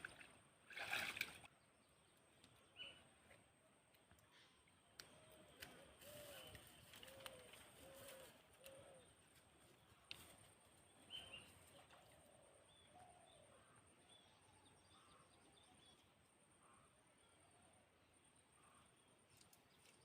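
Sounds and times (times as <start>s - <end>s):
faint bird chirps: 4.0s - 20.0s.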